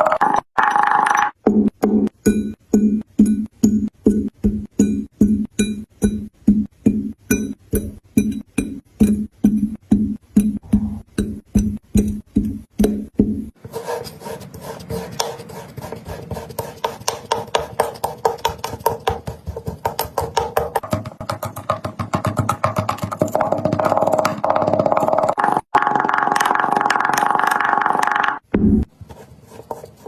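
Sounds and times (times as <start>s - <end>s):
rapid clicking beat: 14.5s - 28.5s.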